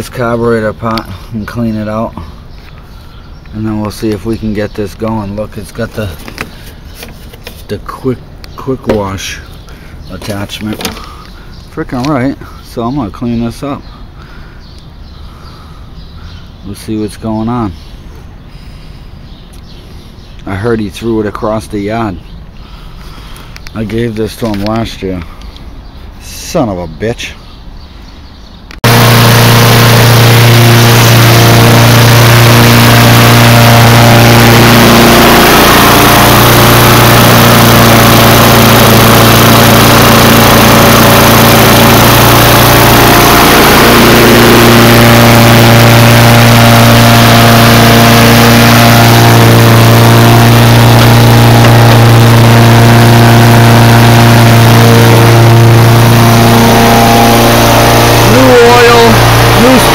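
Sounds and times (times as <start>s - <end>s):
lawn mower engine running: 5.6s - 7.6s, 8.8s - 11.2s, 28.8s - 59.9s.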